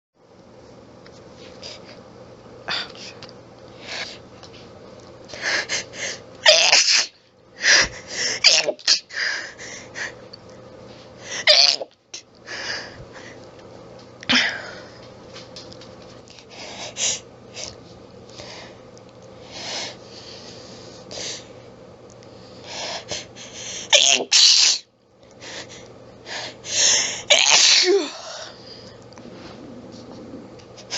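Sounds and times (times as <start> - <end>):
person sneezing: 6.4 - 7.1, 23.9 - 24.9, 27.3 - 28.2.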